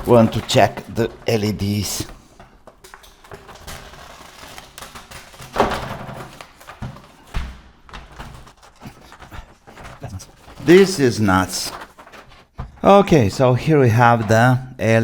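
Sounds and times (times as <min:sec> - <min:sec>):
parts tapping and clicking: 0:02.3 - 0:03.6.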